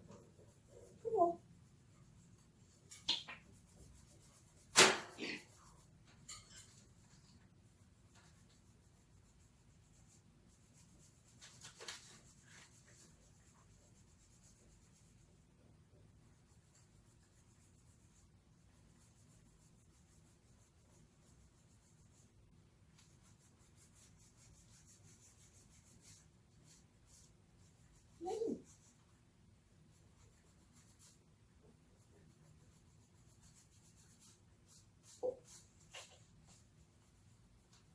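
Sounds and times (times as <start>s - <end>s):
faint scratching and rustling: 0.0s - 37.9s.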